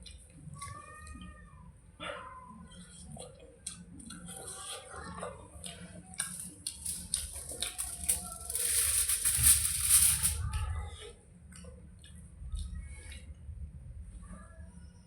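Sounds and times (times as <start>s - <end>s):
chewing: 2.7s - 8.4s
food crunching: 5.6s - 9.5s.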